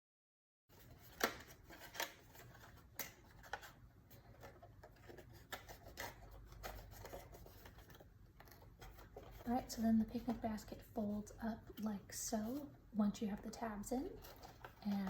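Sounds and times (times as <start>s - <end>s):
cardstock crinkling: 0.7s - 10.4s.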